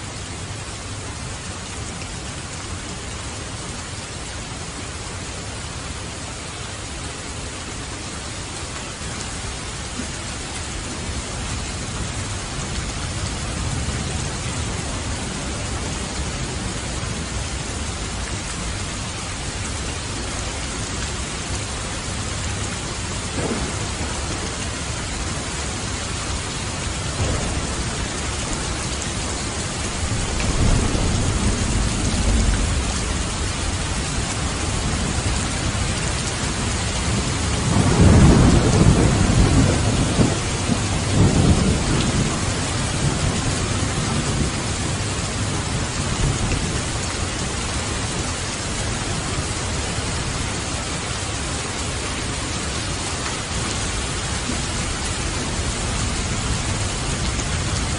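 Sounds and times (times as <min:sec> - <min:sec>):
heavy rain: 0:00.0 - 0:57.9
thunder rolling: 0:23.3 - 0:24.8, 0:26.9 - 0:35.8, 0:37.1 - 0:46.8.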